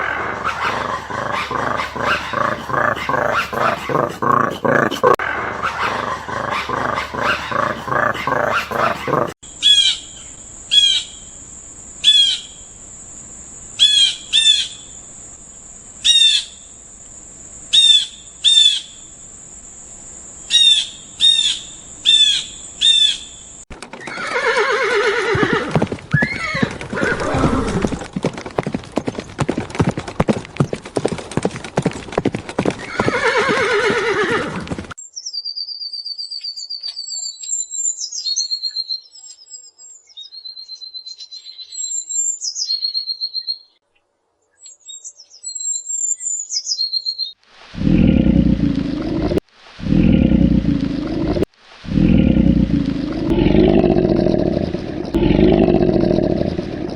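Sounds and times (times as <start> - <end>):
rhythmic animal call: 0.0 - 9.4
horse whinnying: 24.0 - 28.2, 32.8 - 34.8.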